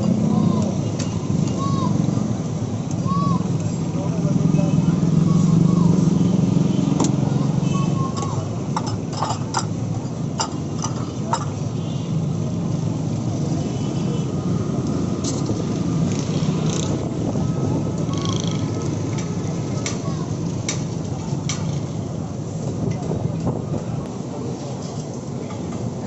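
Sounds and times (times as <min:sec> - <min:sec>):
faint voices: 0:00.0 - 0:09.7, 0:16.7 - 0:26.0
traffic rumble: 0:00.0 - 0:26.0.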